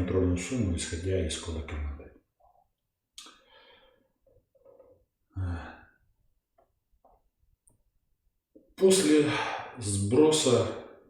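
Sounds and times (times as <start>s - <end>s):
man breathing: 3.2s - 4.3s, 5.3s - 6.1s
man sighing: 5.3s - 6.0s.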